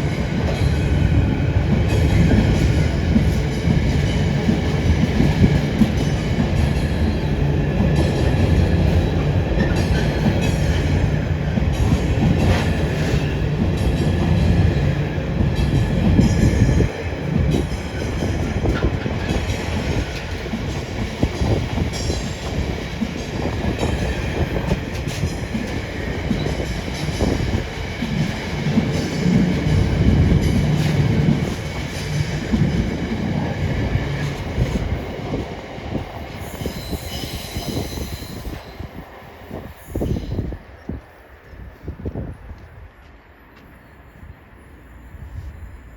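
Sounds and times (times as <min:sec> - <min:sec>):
freight train rolling past: 0:00.0 - 0:45.9
high wheel squeal: 0:36.4 - 0:38.9.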